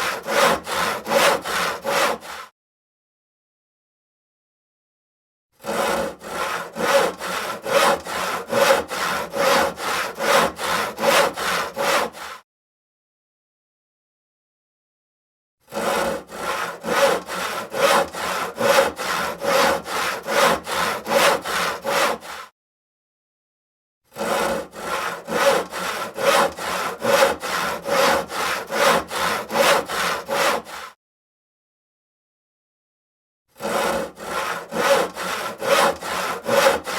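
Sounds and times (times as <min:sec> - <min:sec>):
hand saw cutting wood: 0:00.0 - 0:02.5, 0:05.6 - 0:12.4, 0:15.6 - 0:22.5, 0:24.1 - 0:31.0, 0:33.5 - 0:36.9.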